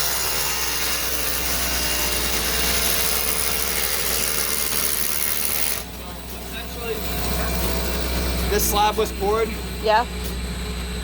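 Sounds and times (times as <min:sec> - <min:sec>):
power drill boring into concrete: 0:00.0 - 0:06.1.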